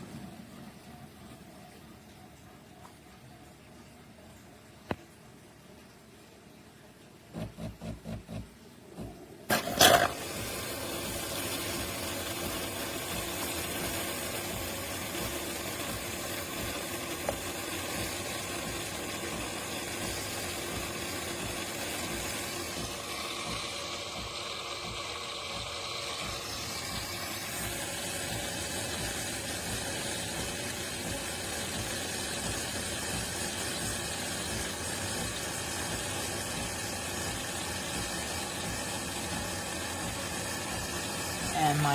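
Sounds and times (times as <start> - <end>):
mechanical whirring with hiss: 7.3 - 41.9
espresso machine pulses: 9.0 - 41.9.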